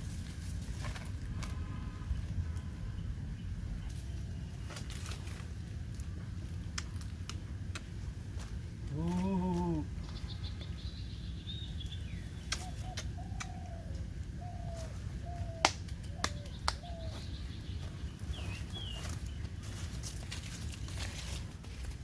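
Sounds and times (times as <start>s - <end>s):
short low animal call: 8.9s - 9.9s.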